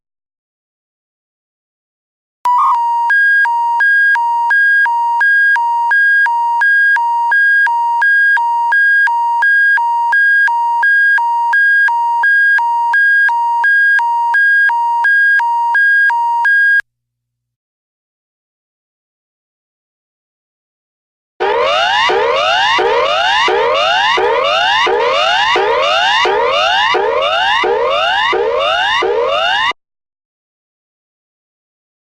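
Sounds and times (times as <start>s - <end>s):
hi-lo electronic alert tone: 2.5s - 2.9s, 21.4s - 29.8s.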